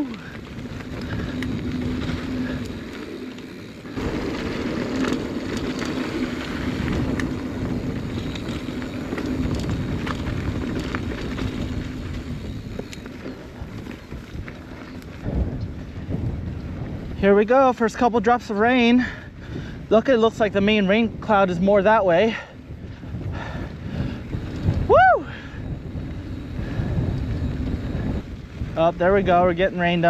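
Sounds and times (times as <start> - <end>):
bike clicks and rattles: 0.0 - 30.0
bike tyres on dirt trail: 0.0 - 30.0.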